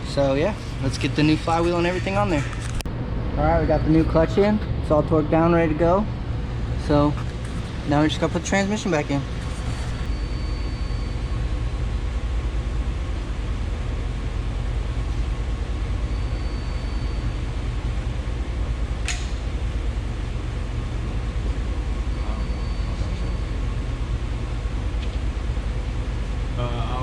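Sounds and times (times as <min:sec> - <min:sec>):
low hum: 0:00.0 - 0:27.0
sharp click: 0:19.0 - 0:19.4.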